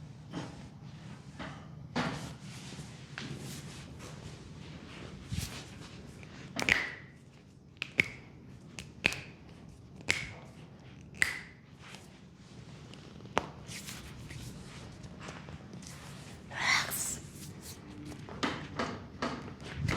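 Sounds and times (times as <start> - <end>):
sharp snapping cracks: 8.8 - 9.4, 10.0 - 10.5.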